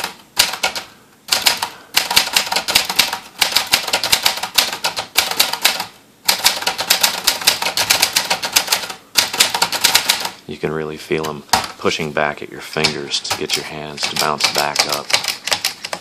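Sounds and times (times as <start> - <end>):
typewriter keys striking: 0.0 - 10.4, 11.2 - 11.8, 12.8 - 16.0.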